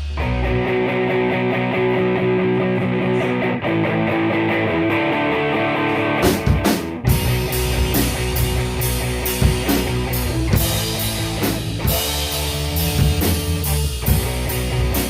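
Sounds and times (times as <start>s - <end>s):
full rock band playing: 0.0s - 15.0s
sustained guitar chords: 0.0s - 15.0s
heavy drum hits: 6.3s - 15.0s.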